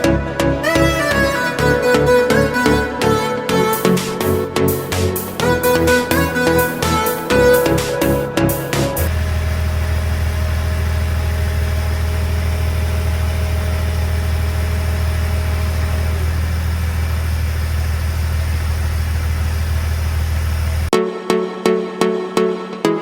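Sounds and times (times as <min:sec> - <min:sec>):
car engine idling: 0:02.7 - 0:20.9.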